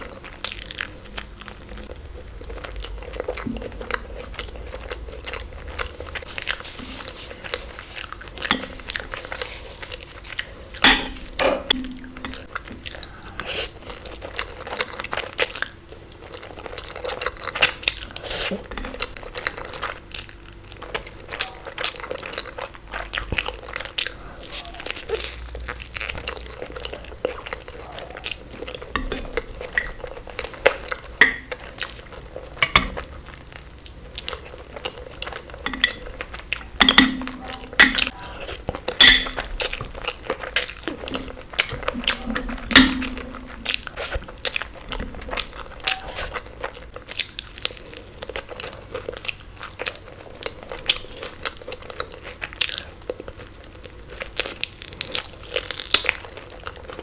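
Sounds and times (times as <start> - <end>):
crunchy bites and chewing: 37.9 - 57.0.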